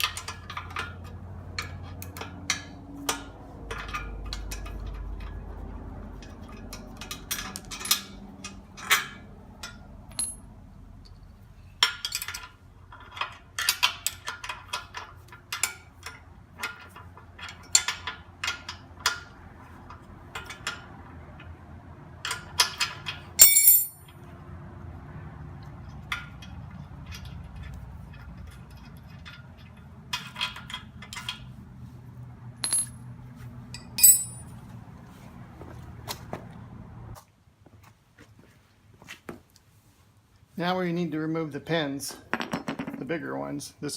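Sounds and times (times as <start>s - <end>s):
wrench clicking and clinking: 22.2s - 24.1s, 33.8s - 34.5s
metal clank: 22.6s - 24.1s, 32.6s - 33.0s, 33.8s - 34.5s.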